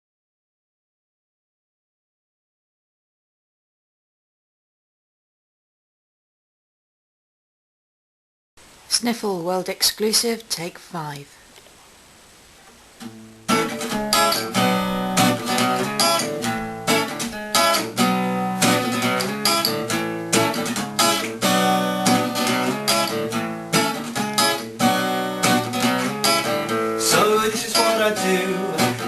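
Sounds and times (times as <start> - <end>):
acoustic guitar strumming chords: 13.0 - 29.0.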